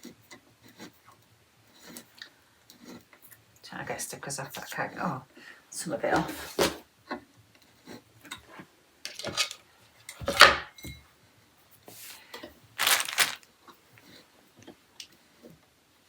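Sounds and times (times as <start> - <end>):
small hard pieces clattering: 9.1 - 9.6, 12.8 - 13.4.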